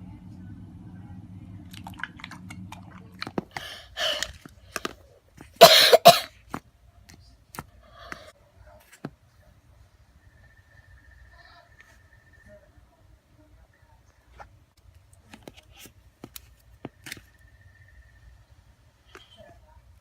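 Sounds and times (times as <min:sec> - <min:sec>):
low steady hum: 0:00.0 - 0:20.0
person coughing: 0:05.6 - 0:06.3.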